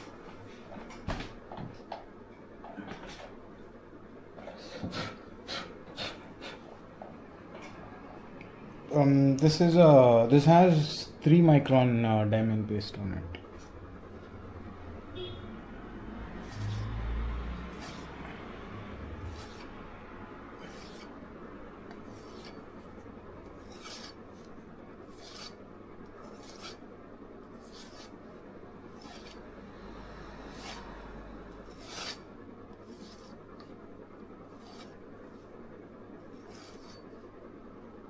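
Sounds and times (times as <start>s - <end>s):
knife blade stropping: 17.7s - 18.2s, 19.2s - 19.7s, 20.6s - 21.1s, 22.0s - 22.8s, 23.5s - 26.8s, 27.6s - 28.2s, 29.0s - 29.4s, 30.5s - 32.2s, 36.4s - 37.1s.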